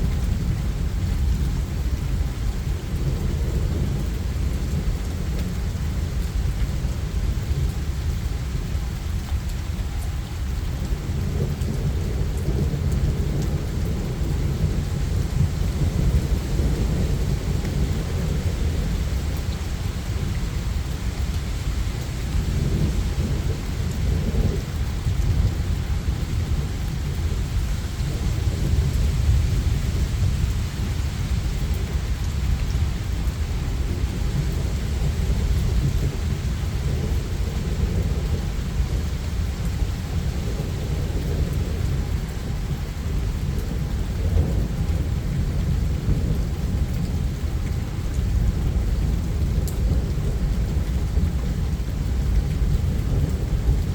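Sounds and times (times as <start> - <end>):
low rolling thunder: 0.0 - 9.8, 10.4 - 53.9
steady rain: 0.0 - 53.9.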